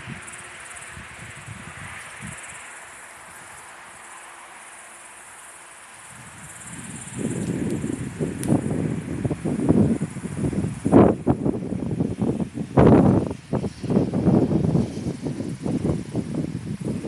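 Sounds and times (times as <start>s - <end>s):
wind buffeting microphone: 0.0s - 4.0s, 6.0s - 17.0s
night insects trilling: 0.0s - 17.0s.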